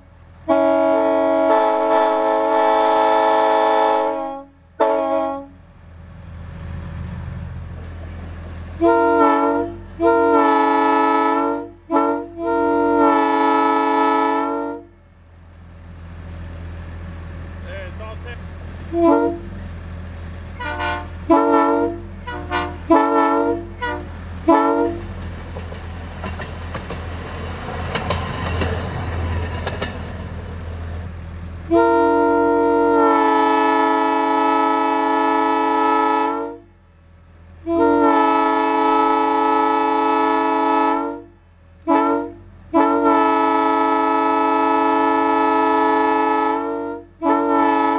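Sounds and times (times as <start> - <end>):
locomotive air horn: 0.4 - 5.7, 8.8 - 15.0, 18.9 - 19.6, 20.5 - 25.2, 31.6 - 36.8, 37.6 - 47.9.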